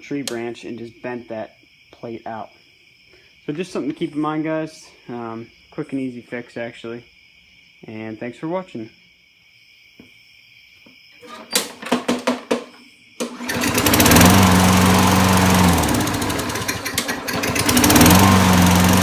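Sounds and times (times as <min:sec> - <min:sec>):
lawnmower engine running: 0:13.2 - 0:19.0.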